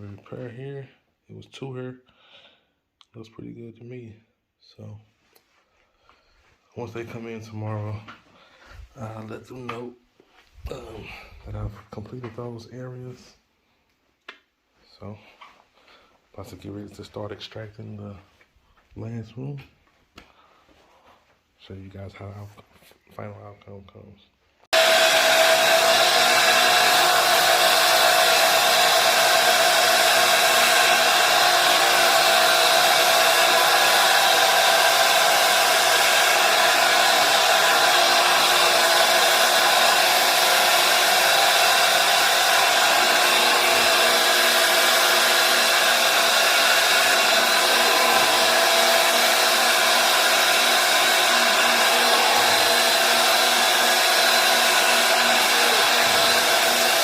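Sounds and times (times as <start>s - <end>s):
rushing suction air: 24.8s - 57.0s
vacuum motor whining: 24.8s - 57.0s.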